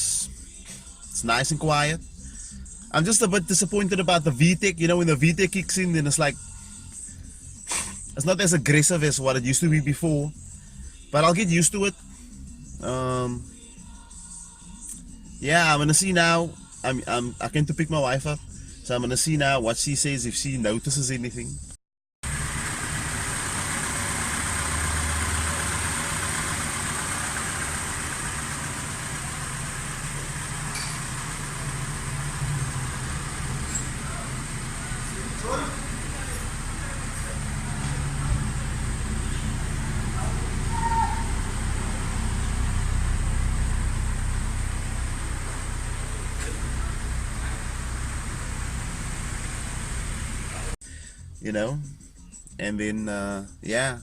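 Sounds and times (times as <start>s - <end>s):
road and cabin noise: 0.0s - 12.8s, 21.6s - 50.8s
car engine humming: 0.0s - 13.0s, 22.2s - 50.8s.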